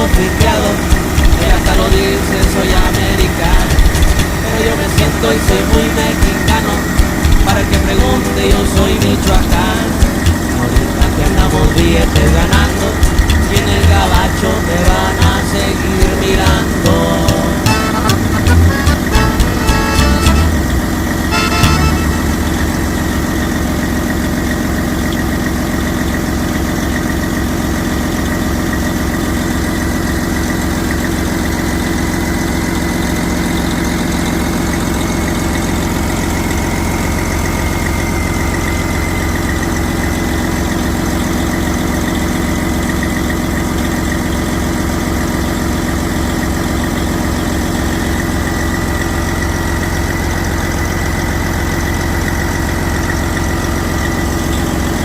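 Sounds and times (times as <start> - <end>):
faint high whine: 0.0 - 24.2
diesel engine idling: 0.0 - 55.0.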